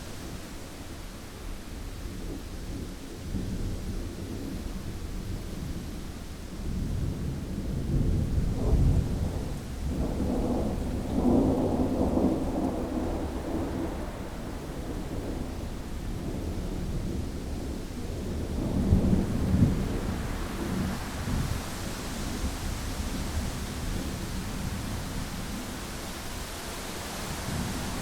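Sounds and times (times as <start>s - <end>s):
thunder rumbling: 6.7s - 28.0s.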